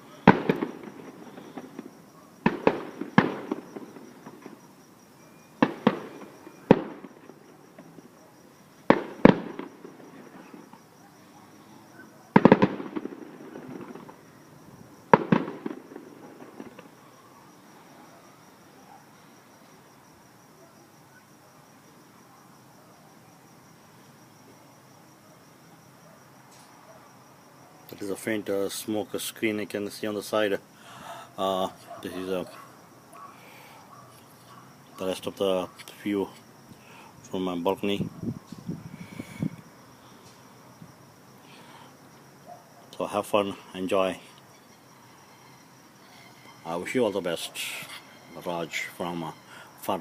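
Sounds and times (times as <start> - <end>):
fireworks bursting with echo: 0.0 - 4.7, 5.5 - 8.2, 8.8 - 10.8, 12.3 - 14.3, 15.1 - 17.1.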